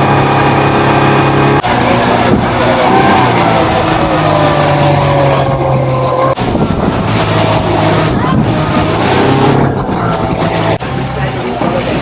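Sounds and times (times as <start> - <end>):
boat engine running loudly: 0.0 - 12.0.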